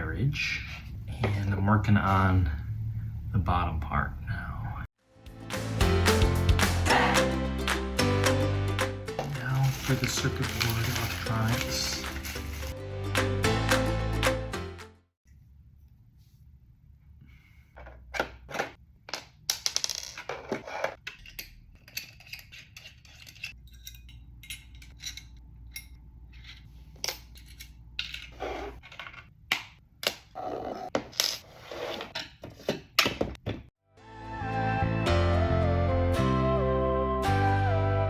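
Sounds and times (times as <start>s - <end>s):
clicks and clinks of small parts: 9.6s - 12.8s, 19.1s - 29.3s.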